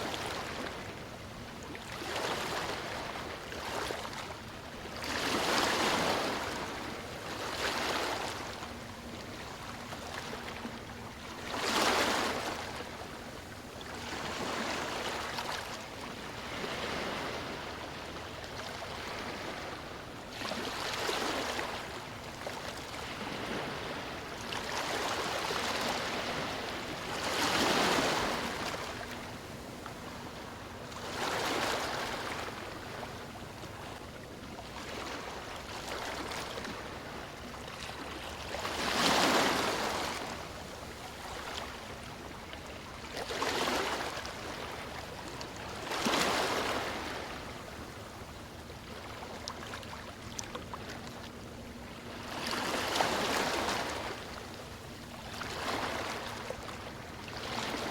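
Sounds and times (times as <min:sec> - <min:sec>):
sea waves breaking on beach: 0:05.0 - 0:08.5, 0:16.3 - 0:18.0, 0:22.8 - 0:29.5, 0:34.7 - 0:42.1.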